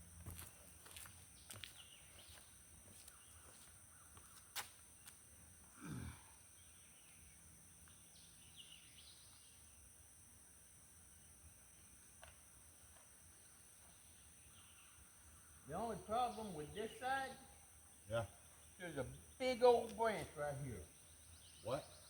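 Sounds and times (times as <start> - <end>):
faint bird chirps: 0.6 - 5.2, 5.8 - 10.0, 13.3 - 22.0.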